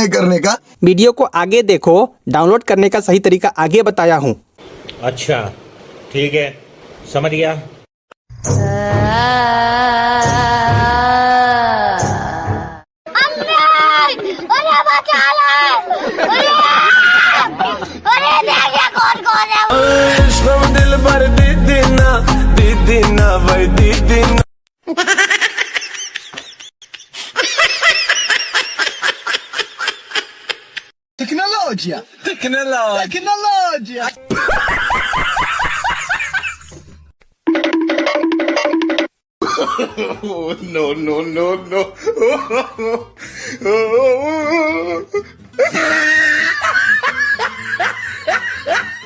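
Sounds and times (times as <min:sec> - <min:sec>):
music: 0:08.4 - 0:11.3, 0:19.7 - 0:24.4
high-pitched comic laughter: 0:13.2 - 0:19.7, 0:24.8 - 0:30.9, 0:44.3 - 0:49.0.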